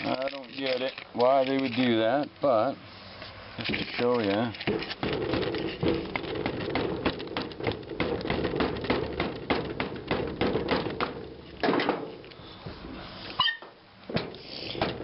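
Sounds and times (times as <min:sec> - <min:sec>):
loud knock: 0:05.0 - 0:12.0.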